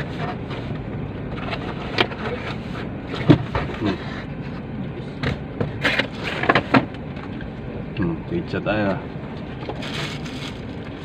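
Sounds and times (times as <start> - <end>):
knocks and rustles of people moving: 0.0 - 7.6
car cabin hum: 0.0 - 11.0.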